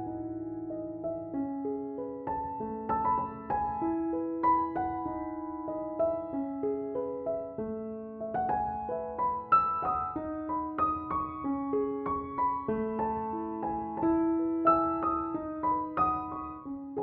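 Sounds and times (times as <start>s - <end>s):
gentle piano melody: 0.0s - 17.0s.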